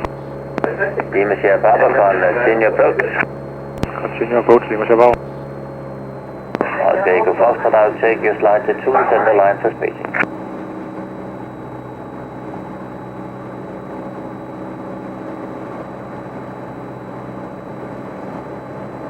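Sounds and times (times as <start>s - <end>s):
airplane engine and propeller droning: 0.0s - 19.0s.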